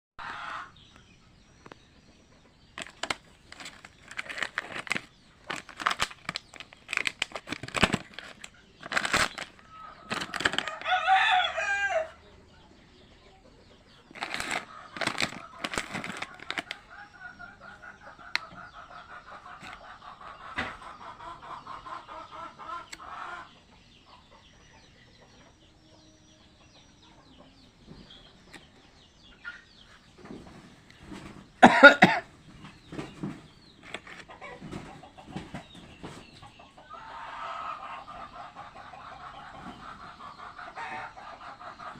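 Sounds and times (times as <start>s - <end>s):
rooster crowing: 10.6s - 12.2s.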